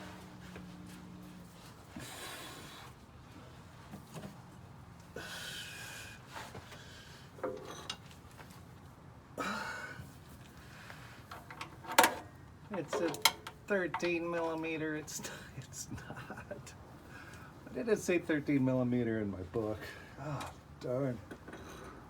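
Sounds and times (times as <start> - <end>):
man breathing heavily: 1.8 - 3.0, 5.1 - 7.4, 9.4 - 11.3.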